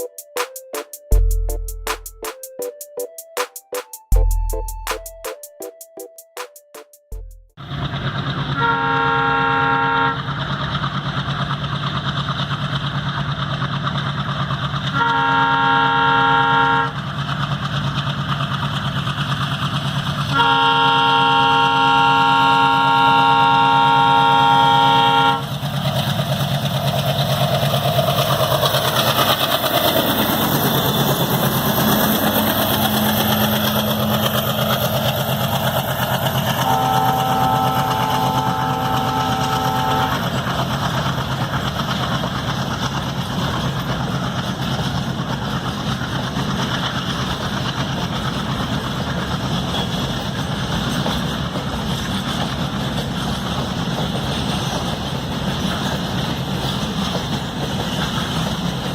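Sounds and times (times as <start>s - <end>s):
diesel locomotive chugging: 0.0s - 58.9s
train horn: 8.5s - 10.3s, 14.9s - 17.0s, 20.3s - 25.5s, 36.4s - 40.4s.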